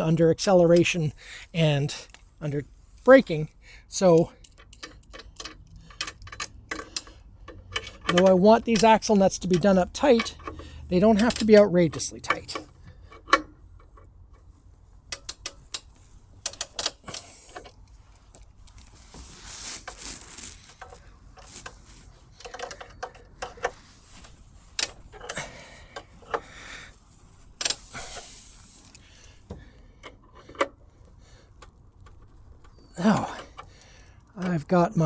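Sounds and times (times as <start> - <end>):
wrench clicking on metal: 4.0 - 14.1, 15.1 - 17.8.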